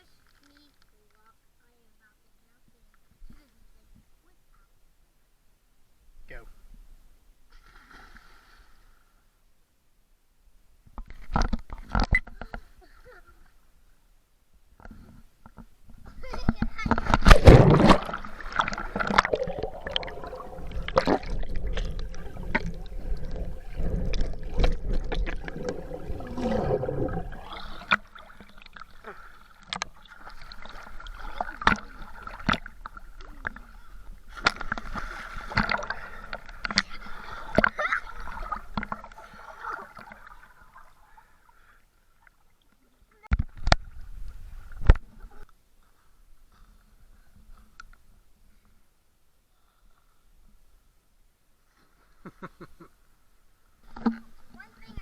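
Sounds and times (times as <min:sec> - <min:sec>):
water splashing around swimmers: 0:16.2 - 0:42.6.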